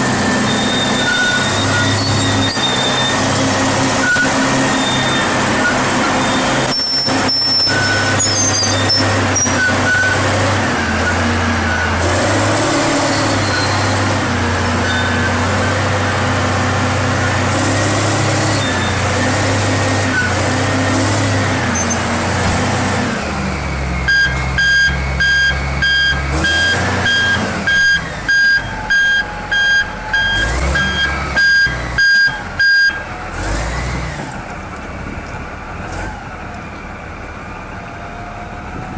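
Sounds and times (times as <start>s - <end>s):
heavy machine engine running: 0.0s - 38.9s
reversing alarm beeping: 0.3s - 3.3s, 4.0s - 10.3s, 14.8s - 15.8s, 23.5s - 33.1s.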